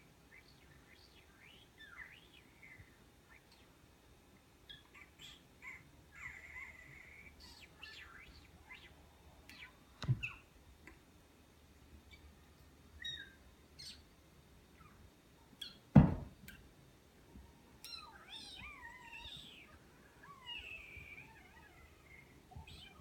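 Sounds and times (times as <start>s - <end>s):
person imitating mouse squeaks: 4.7s - 8.9s, 17.8s - 23.0s
loud thump: 16.0s - 16.4s.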